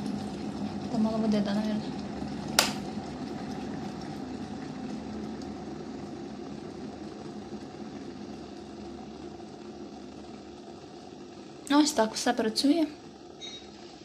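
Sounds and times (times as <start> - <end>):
kettle water boiling: 0.0 - 14.0
kettle switch click: 2.6 - 2.8.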